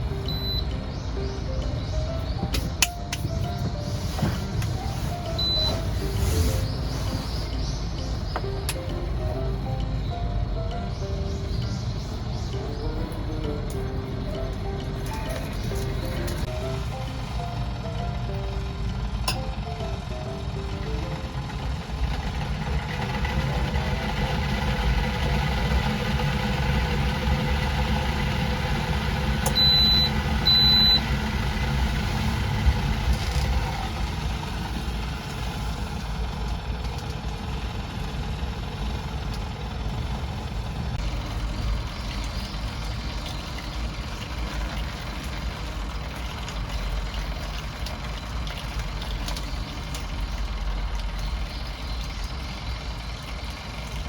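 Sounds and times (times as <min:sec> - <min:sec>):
vehicle engine rumbling: 0:00.0 - 0:54.0
short high electronic beeps: 0:05.3 - 0:06.0.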